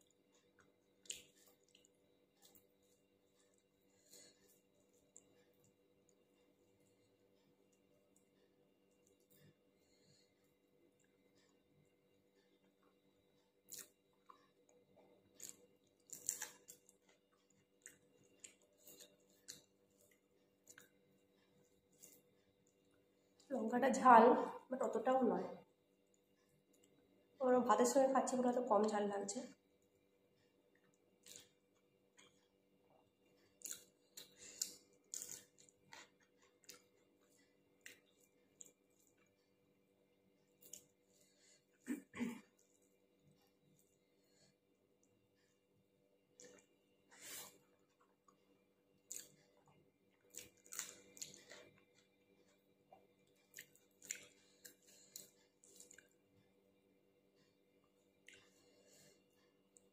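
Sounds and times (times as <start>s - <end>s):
person chewing crunchy food: 0.0s - 10.3s, 13.5s - 23.1s, 30.7s - 39.6s, 40.4s - 41.9s, 46.3s - 56.4s.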